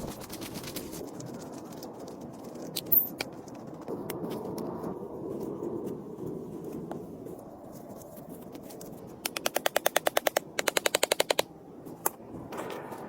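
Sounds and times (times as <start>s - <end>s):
sharp evenly spaced clicks: 9.2s - 11.5s.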